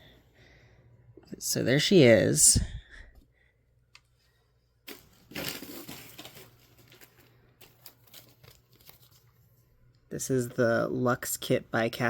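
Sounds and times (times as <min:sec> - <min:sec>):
packaging crinkling: 0:04.8 - 0:09.5.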